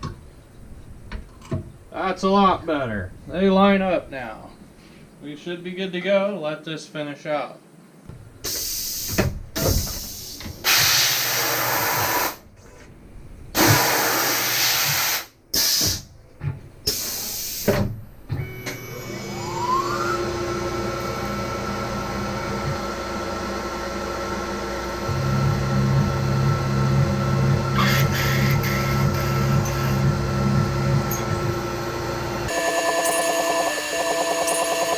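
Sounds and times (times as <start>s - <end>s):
loud hissing bursts: 8.4s - 12.5s, 13.5s - 16.1s
mill spindle whine: 18.2s - 34.9s
low regular pulsing: 18.9s - 34.9s.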